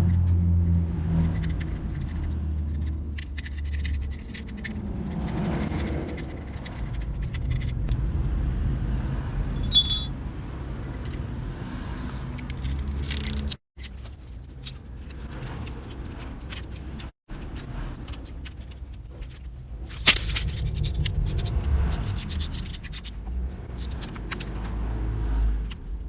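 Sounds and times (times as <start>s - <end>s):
sharp metallic clink: 9.6s - 10.2s.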